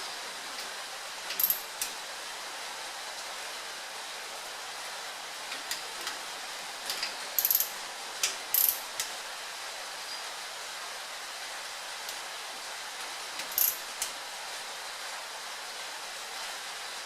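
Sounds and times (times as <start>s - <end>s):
ratchet wrench clicking: 1.3s - 1.9s, 7.4s - 7.8s, 8.6s - 9.1s, 13.4s - 14.1s.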